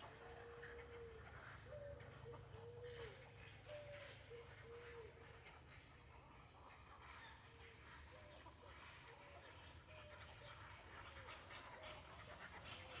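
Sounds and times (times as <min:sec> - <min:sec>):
soft bird chatter: 0:00.0 - 0:13.0.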